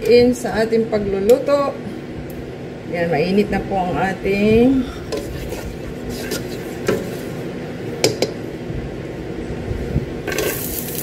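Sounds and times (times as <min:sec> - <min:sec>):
food sizzling in pan: 0:10.3 - 0:11.0.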